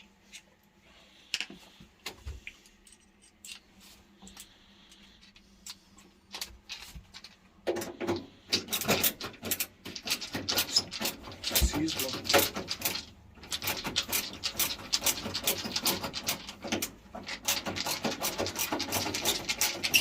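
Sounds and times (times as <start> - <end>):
small metal tools clattering: 8.5 - 20.0.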